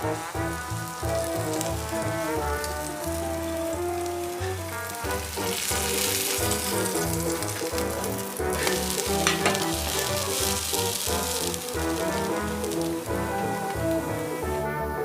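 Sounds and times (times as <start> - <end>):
background music with bass line: 0.0 - 15.0
crackling hissing noise: 0.0 - 15.0
sharp cracks: 5.3 - 14.1.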